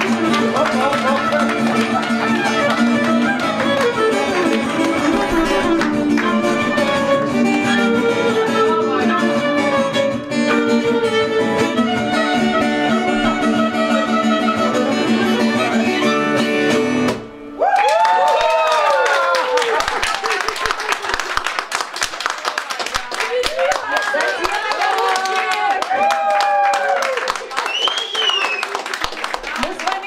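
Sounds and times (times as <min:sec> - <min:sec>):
violin melody: 0:00.0 - 0:17.1
acoustic guitar playing: 0:00.0 - 0:17.6.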